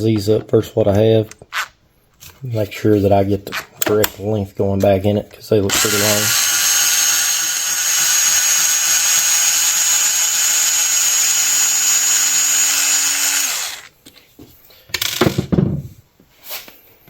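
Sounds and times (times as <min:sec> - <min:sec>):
power screwdriver running: 0:05.7 - 0:13.9.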